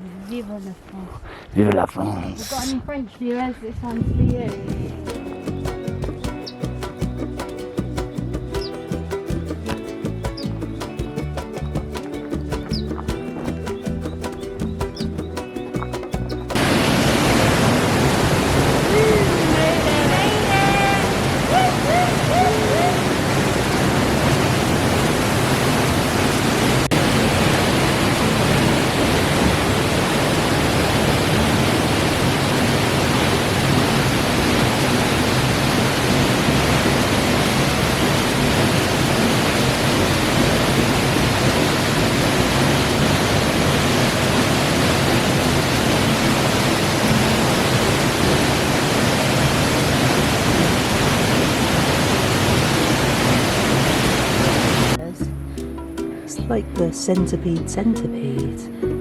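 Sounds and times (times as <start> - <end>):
waterfall rushing: 16.5 - 55.0.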